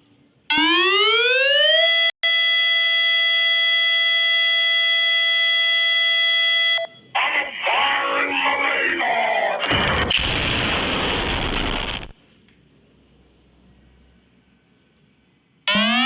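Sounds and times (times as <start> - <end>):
tornado siren wailing: 0.5 - 7.0, 15.7 - 16.0.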